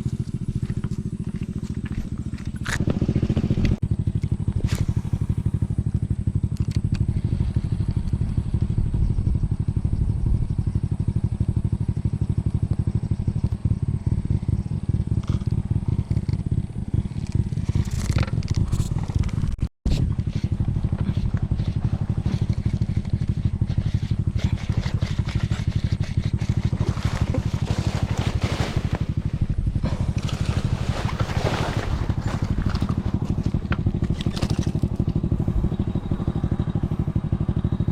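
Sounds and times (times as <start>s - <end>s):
small engine running: 0.0s - 37.9s
light rattles and scrapes: 17.1s - 35.2s.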